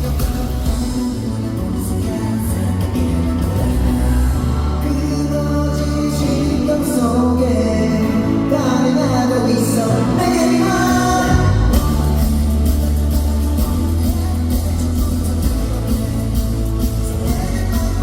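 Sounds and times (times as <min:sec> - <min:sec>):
backing music with heavy bass: 0:00.0 - 0:18.0
man singing pop song: 0:00.0 - 0:18.0.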